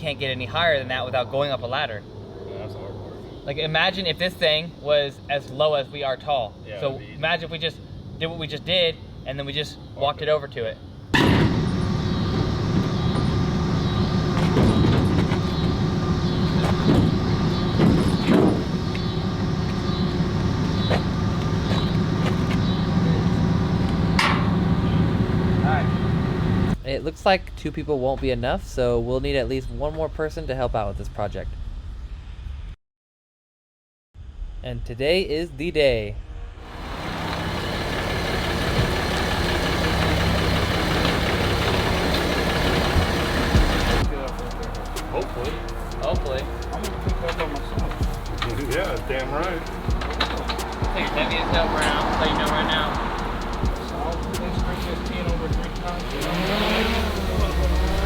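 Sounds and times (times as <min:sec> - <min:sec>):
vehicle rumble: 0:10.9 - 0:26.8, 0:36.6 - 0:58.0.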